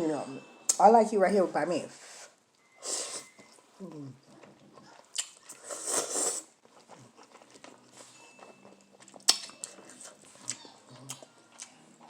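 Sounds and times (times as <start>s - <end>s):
chewing and mouth noises: 3.2s - 12.0s.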